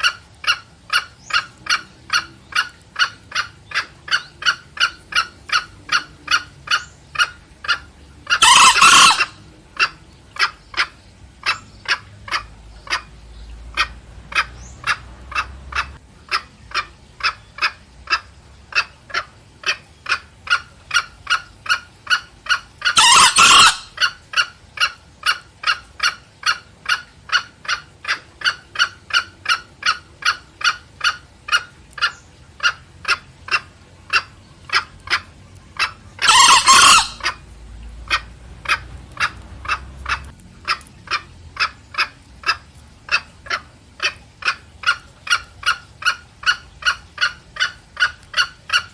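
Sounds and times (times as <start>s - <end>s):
junglefowl clucking: 0.0s - 48.9s
rooster crowing hoarsely: 36.2s - 37.2s.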